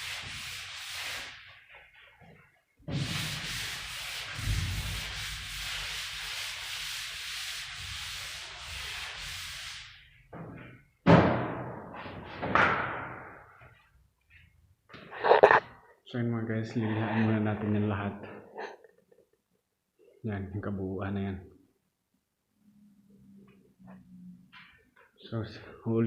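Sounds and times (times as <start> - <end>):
sandpaper scraping drywall: 0.0 - 2.2, 2.9 - 10.2.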